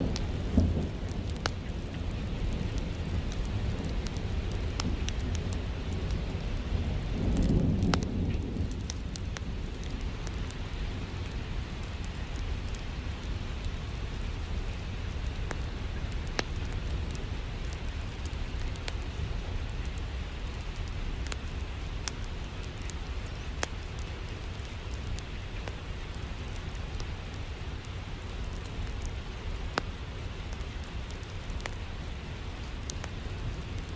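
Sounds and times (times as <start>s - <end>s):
thunder rumbling: 0.0s - 13.6s
steady rain: 0.0s - 33.9s.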